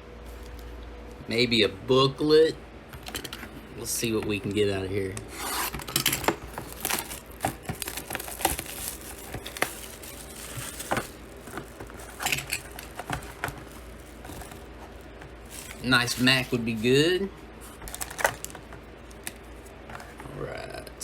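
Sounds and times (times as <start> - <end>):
cards clicking and rustling: 5.1 - 17.0, 17.7 - 20.4
packaging crinkling and tearing: 5.2 - 20.4.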